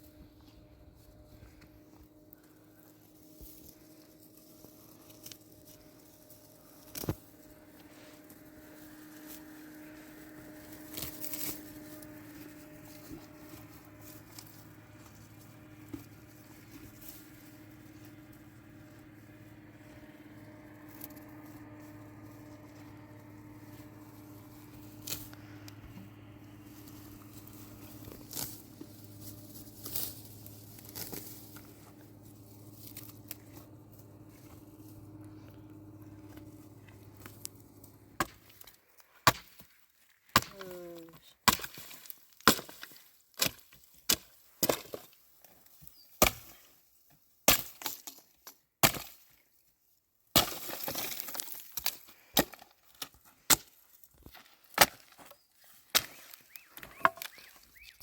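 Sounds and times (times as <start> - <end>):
low hum: 0.0 - 38.8.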